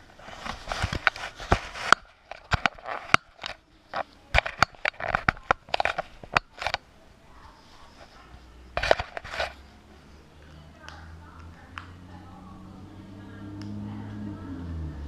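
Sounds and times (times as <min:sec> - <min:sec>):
crackly rustles: 0:00.0 - 0:11.9.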